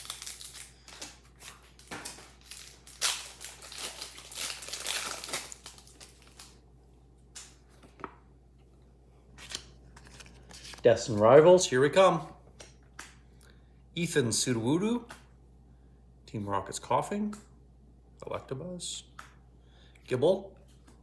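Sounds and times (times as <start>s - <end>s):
foil wrapper crinkling and tearing: 0.0s - 6.6s, 9.4s - 10.9s.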